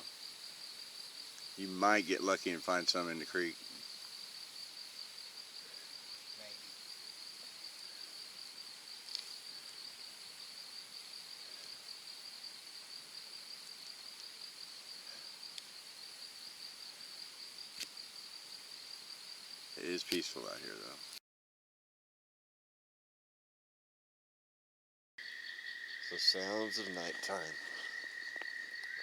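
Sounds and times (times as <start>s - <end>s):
insect chorus trilling: 0.0s - 21.2s, 25.2s - 29.0s
faint clicks: 9.0s - 9.4s, 15.5s - 15.7s, 20.0s - 20.4s.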